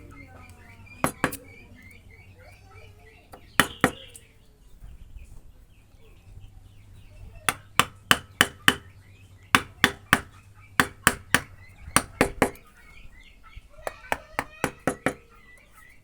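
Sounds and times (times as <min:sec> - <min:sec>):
hammer striking wood: 0:01.0 - 0:01.4, 0:03.3 - 0:04.1, 0:07.5 - 0:08.9, 0:09.5 - 0:12.6, 0:13.9 - 0:15.3.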